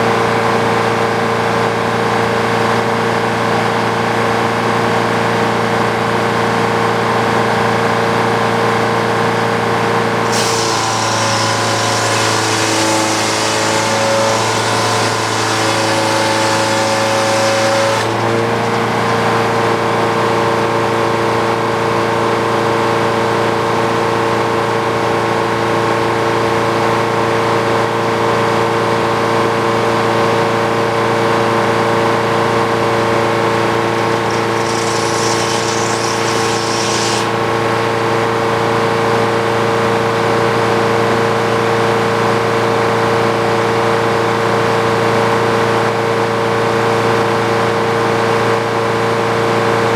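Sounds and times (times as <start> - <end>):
sawmill engine running: 9.9 - 20.5, 32.6 - 37.8
saw blade cutting log hiss: 10.3 - 19.5, 33.7 - 37.5.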